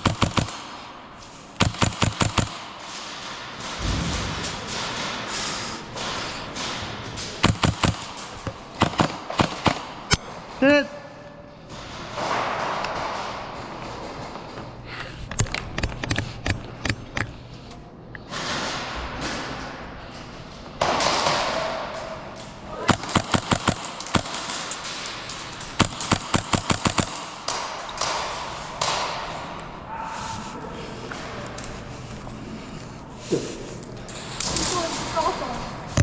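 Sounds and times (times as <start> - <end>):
airsoft gunshots: 0.0 - 0.9, 1.6 - 2.9, 7.4 - 10.0, 22.8 - 24.7, 25.8 - 29.2.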